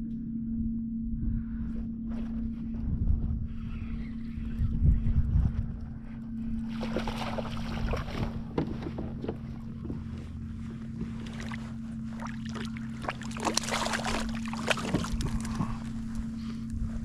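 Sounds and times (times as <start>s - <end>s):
steady low hum: 0.0s - 17.0s
water splashing against kayak hull: 6.7s - 16.5s.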